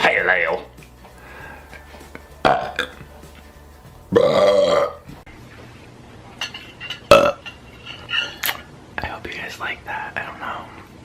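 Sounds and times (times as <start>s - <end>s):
man belching: 2.4s - 3.0s, 4.1s - 5.1s, 7.1s - 7.4s.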